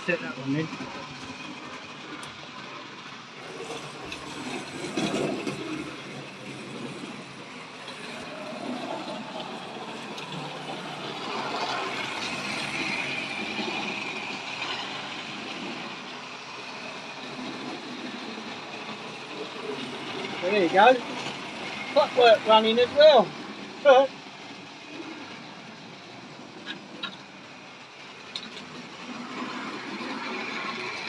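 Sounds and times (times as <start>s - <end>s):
toy train wheels rattling: 0.6s - 31.0s
steady higher whine: 5.9s - 24.1s.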